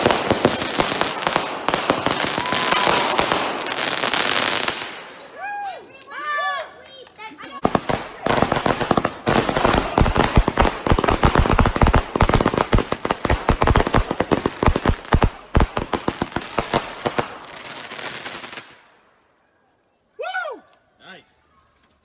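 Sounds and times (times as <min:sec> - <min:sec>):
fireworks bangs: 0:00.0 - 0:05.6, 0:07.5 - 0:19.0
fireworks crackle: 0:00.0 - 0:06.2, 0:06.9 - 0:19.4.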